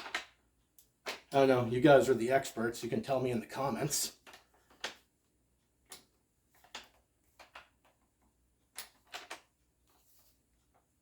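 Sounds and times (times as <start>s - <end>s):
bayonet metallic clicks and taps: 4.1s - 5.2s, 5.8s - 8.1s.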